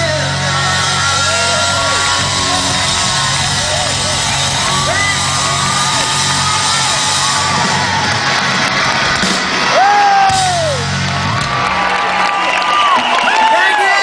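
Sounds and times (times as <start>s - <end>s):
live rock band playing: 0.0s - 12.2s
concert crowd yelling: 0.0s - 14.0s.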